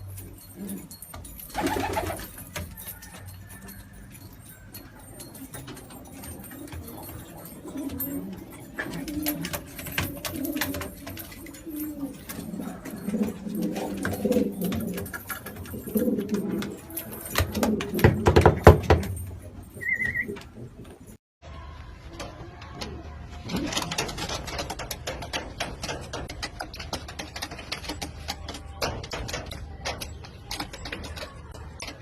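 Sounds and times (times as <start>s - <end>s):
pigeons cooing: 0.0s - 18.5s.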